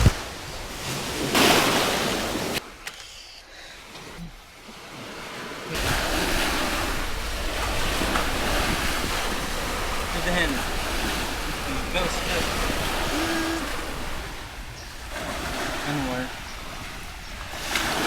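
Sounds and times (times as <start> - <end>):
wind buffeting microphone: 0.0 - 1.3, 5.8 - 18.0
sea waves washing onto beach: 0.0 - 2.8, 3.8 - 18.0.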